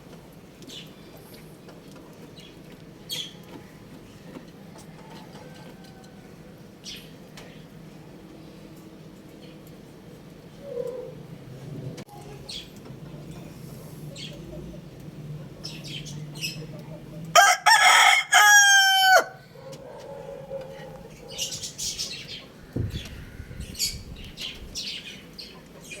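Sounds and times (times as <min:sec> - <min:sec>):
rooster crowing: 0:04.8 - 0:06.6, 0:17.3 - 0:19.5.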